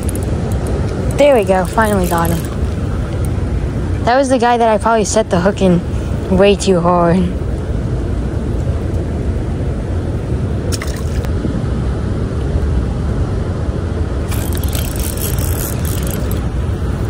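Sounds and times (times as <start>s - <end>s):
water pouring over spillway: 14.3s - 16.4s.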